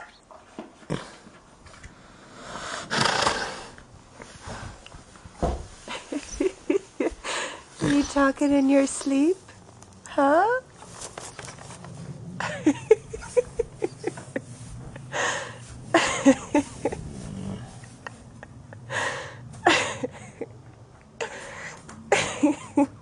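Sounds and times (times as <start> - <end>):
horse snoring: 0.8 - 1.4, 2.1 - 3.9, 7.7 - 8.4, 15.5 - 18.0
horse grunting: 7.7 - 8.3, 15.8 - 18.0.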